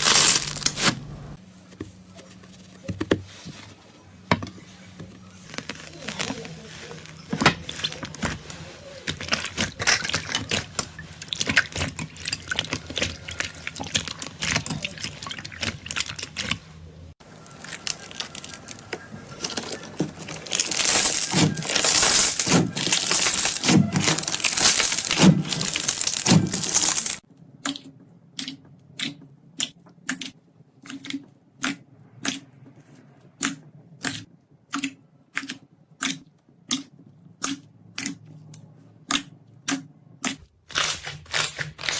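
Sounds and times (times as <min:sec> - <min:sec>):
slime crackling and squelching: 0:00.0 - 0:00.9, 0:05.2 - 0:27.2.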